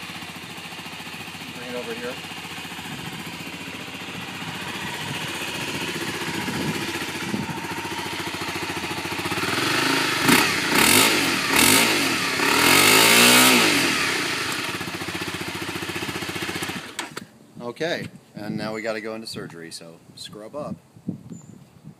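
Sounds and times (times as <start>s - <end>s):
motorcycle engine idling and revving: 0.0s - 17.2s.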